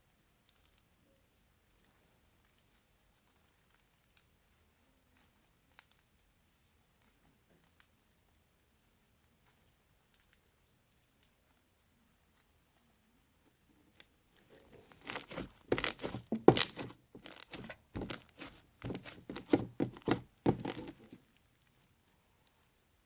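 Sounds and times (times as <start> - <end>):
crunchy slime crackling and popping: 0.3 - 1.1, 1.7 - 8.4, 14.8 - 21.8.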